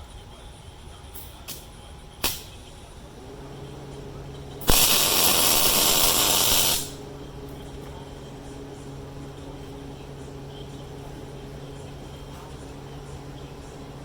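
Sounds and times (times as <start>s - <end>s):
arc welder humming: 0.0s - 14.0s
welding crackling hiss: 0.9s - 3.0s, 4.6s - 7.1s.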